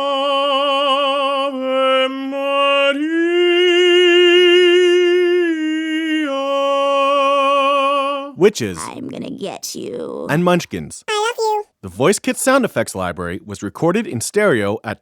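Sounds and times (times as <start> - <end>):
operatic voice singing: 0.1 - 10.4, 11.1 - 11.6.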